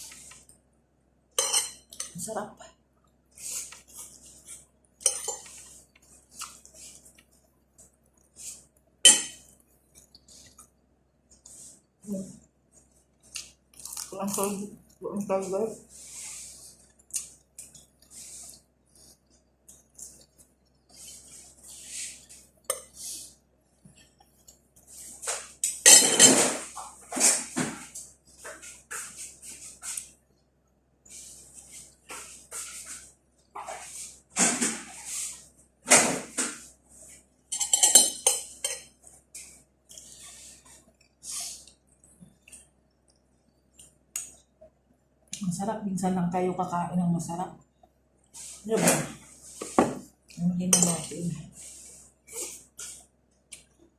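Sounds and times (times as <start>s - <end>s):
cutlery clinking against a plate: 1.4s - 2.1s, 5.0s - 5.7s, 9.1s - 9.5s, 25.6s - 27.4s, 37.5s - 38.9s.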